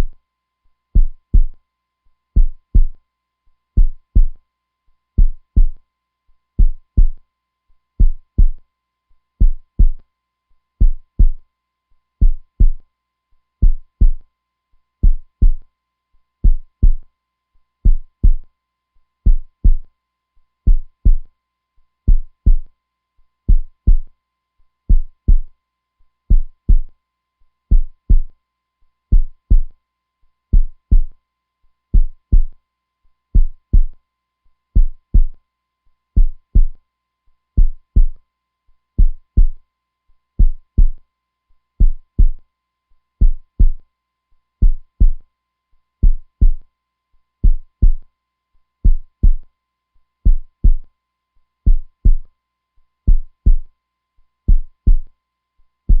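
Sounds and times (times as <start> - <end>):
heartbeat: 1.0 - 1.6, 2.4 - 3.0, 3.8 - 4.4, 5.2 - 5.8, 6.6 - 7.2, 8.0 - 8.6, 9.4 - 10.0, 10.8 - 11.4, 12.2 - 12.8, 13.6 - 14.2, 15.0 - 15.6, 16.4 - 17.1, 17.8 - 18.5, 19.3 - 19.9, 20.7 - 21.3, 22.1 - 22.7, 23.5 - 24.1, 24.9 - 25.5, 26.3 - 26.9, 27.7 - 28.3, 29.1 - 29.8, 30.5 - 31.2, 32.0 - 32.6, 33.4 - 34.0, 34.8 - 35.4, 36.2 - 36.8, 37.6 - 38.2, 39.0 - 39.6, 40.4 - 41.0, 41.8 - 42.4, 43.2 - 43.8, 44.6 - 45.2, 46.0 - 46.6, 47.4 - 48.0, 48.8 - 49.4, 50.2 - 50.8, 51.7 - 52.3, 53.1 - 53.7, 54.5 - 55.1.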